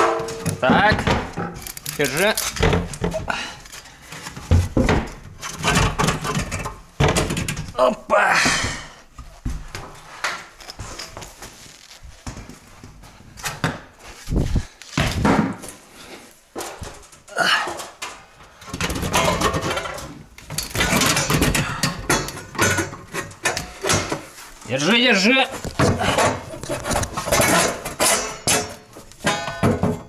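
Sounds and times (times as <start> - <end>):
metal pipe knocking and scraping: 0.0 - 3.5, 25.6 - 30.0.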